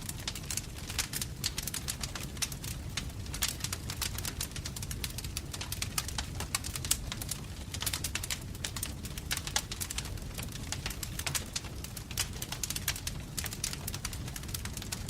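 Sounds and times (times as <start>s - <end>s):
low rumble of flames: 0.0s - 15.0s
wood fire crackling and popping: 0.0s - 15.0s.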